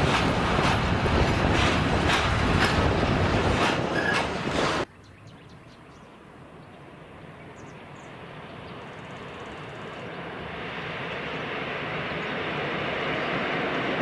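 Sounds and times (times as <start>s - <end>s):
train rumbling: 0.0s - 4.9s.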